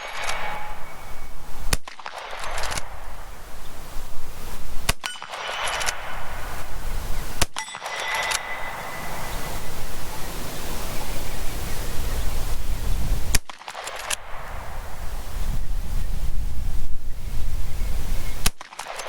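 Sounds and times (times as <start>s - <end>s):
metallic ringing: 0.0s - 1.6s, 5.0s - 6.8s, 7.6s - 10.3s
rifle shots: 0.0s - 3.9s, 4.6s - 9.7s, 13.3s - 15.0s, 18.4s - 19.0s.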